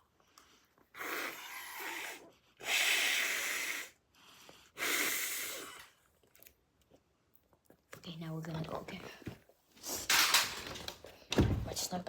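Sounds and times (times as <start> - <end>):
breath blown into whoopee cushion: 0.9 - 4.0, 4.8 - 5.9.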